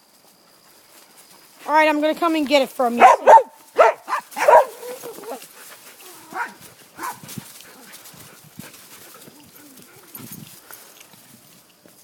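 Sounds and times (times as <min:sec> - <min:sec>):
dogs barking: 0:03.0 - 0:05.4, 0:06.1 - 0:07.2.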